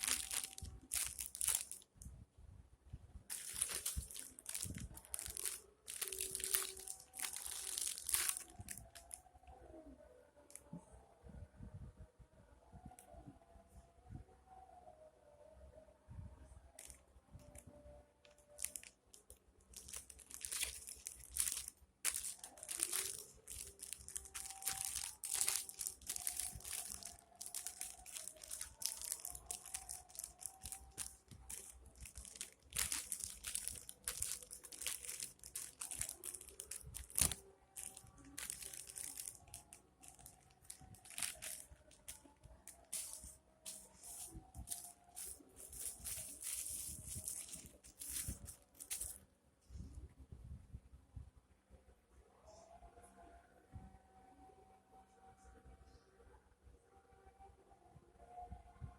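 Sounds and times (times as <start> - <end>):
plastic wrapping crinkling: 0.0 - 2.0, 3.3 - 9.2, 16.8 - 17.6, 18.2 - 49.2.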